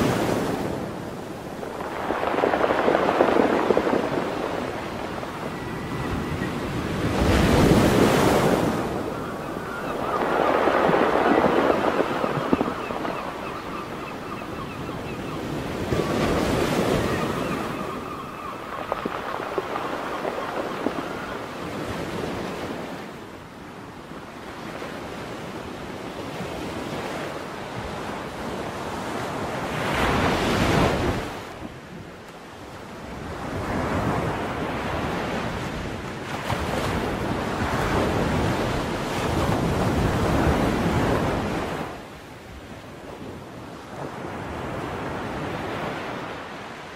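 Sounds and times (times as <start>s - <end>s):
ocean waves breaking: 0.0s - 31.9s, 32.8s - 46.9s
seagulls calling: 1.8s - 22.0s.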